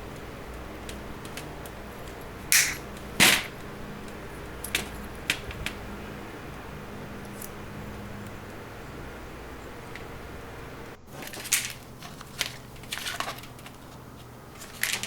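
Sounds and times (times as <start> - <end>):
small hard parts clicking and knocking: 0.0 - 5.9, 11.1 - 15.0
steady low hum: 0.0 - 15.0.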